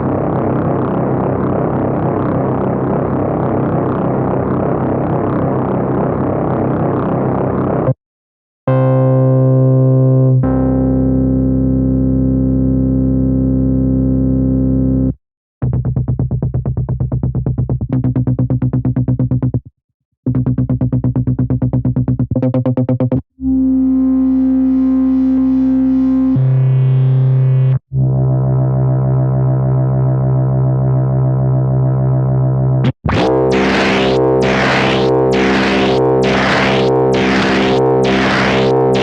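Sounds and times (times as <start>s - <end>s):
rapid pulsing synthesizer notes: 0.0s - 8.0s, 32.8s - 39.0s
buzzy noisy synthesizer sound: 32.8s - 39.0s
sustained synthesizer tone: 32.8s - 39.0s.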